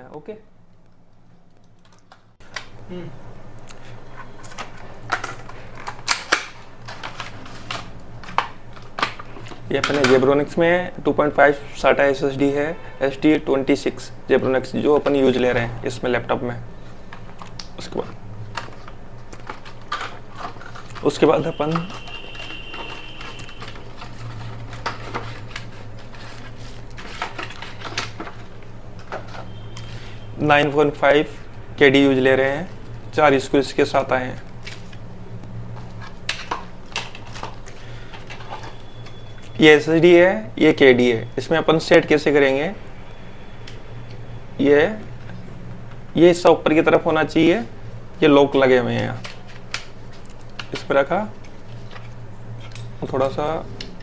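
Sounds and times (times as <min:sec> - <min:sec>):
steady low hum: 0:00.0 - 0:54.0
laptop parts clicking and clacking: 0:04.2 - 0:10.5, 0:17.1 - 0:30.8.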